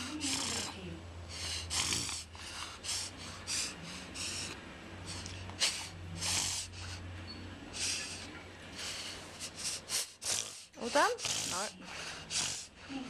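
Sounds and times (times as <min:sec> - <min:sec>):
puppy reverse sneezing: 0:05.1 - 0:06.8.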